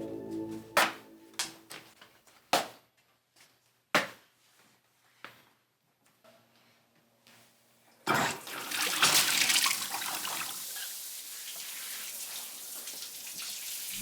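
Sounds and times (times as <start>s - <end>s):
shower water spraying: 10.3s - 14.0s.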